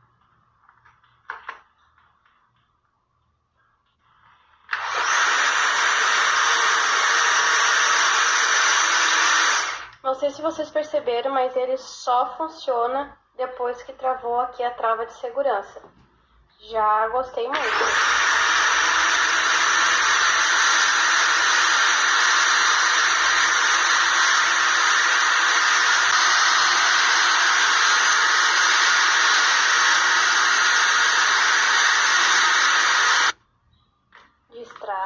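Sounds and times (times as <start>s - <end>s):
electric blender whirring: 4.7s - 10.0s, 17.5s - 33.4s.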